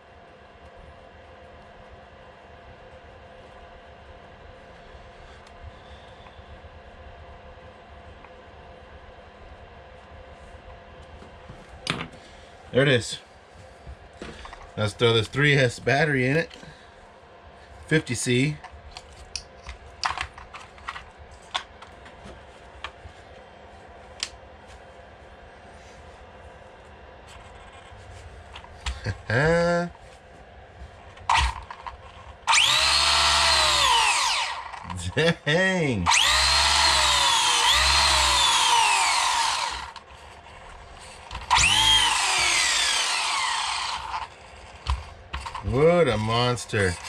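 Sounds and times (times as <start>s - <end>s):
electric motor whining: 32.5s - 34.9s, 36.1s - 40.0s, 41.3s - 44.9s.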